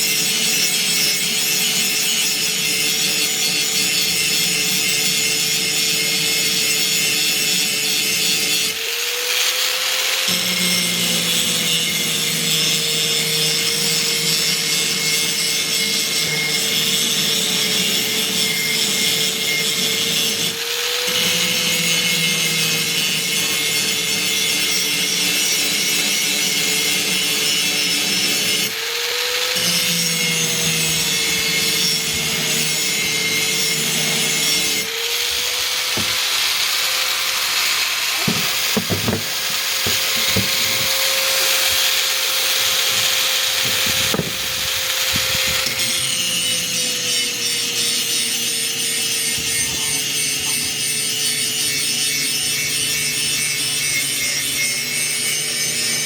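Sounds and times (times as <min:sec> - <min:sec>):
grinder sharpening axe blade: 0:29.3 - 0:55.2.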